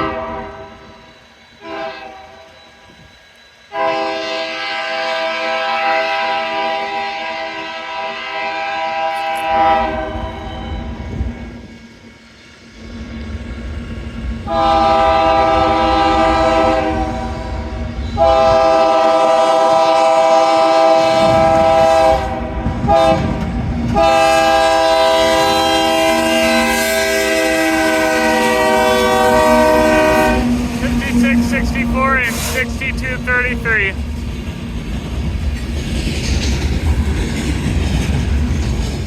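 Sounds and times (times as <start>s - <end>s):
locomotive air horn blasts: 0.0s - 0.8s, 1.6s - 2.4s, 3.7s - 10.2s, 14.5s - 17.5s, 18.2s - 23.4s, 24.0s - 33.9s
rumble of passing train: 0.0s - 39.0s.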